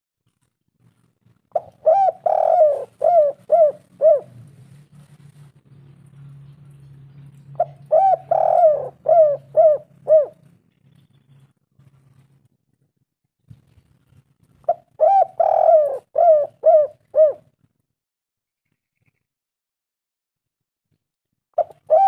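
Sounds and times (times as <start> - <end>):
dove cooing: 1.5 - 4.8, 7.5 - 10.6, 14.6 - 17.6, 21.6 - 22.0.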